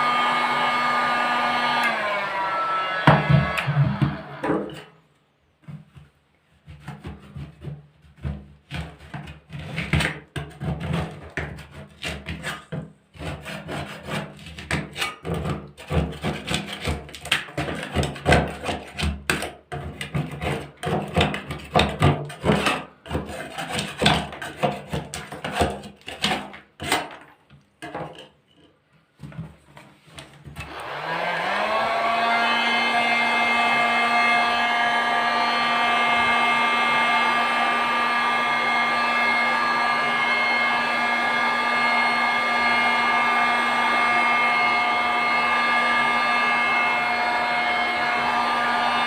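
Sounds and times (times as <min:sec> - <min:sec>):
scraper scraping paint off wood: 0:05.8 - 0:27.1.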